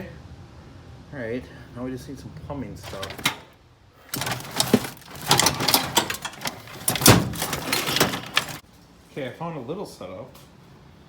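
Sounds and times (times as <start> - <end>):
rummaging through parts: 2.8 - 3.5, 4.1 - 8.6.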